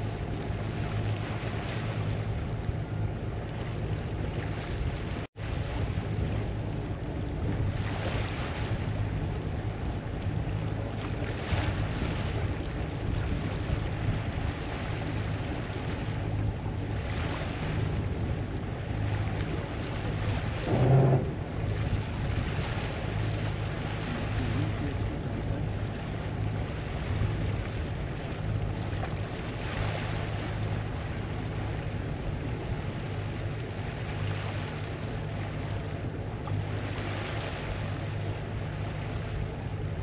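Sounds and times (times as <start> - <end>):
steady low hum: 0.0 - 40.0
water rushing along hull: 0.0 - 40.0
wind on microphone: 0.0 - 40.0.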